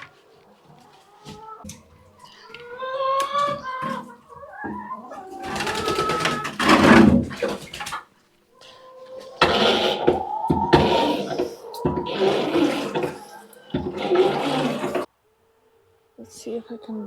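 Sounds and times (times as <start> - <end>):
hens calling: 0.0 - 17.0
loud rustling scrape: 5.4 - 8.0, 9.2 - 15.1.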